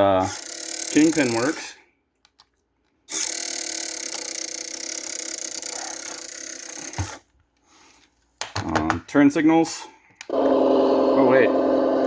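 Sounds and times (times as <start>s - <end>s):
toy truck motor whirring: 0.2s - 1.7s, 3.1s - 7.3s.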